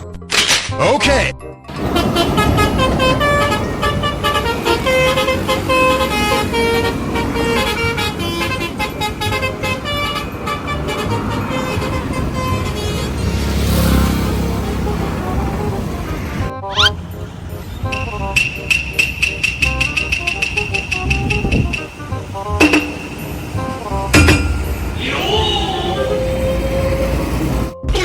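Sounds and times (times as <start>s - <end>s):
multi-tone bus horn tune: 1.7s - 27.8s
rushing noise: 1.7s - 27.8s.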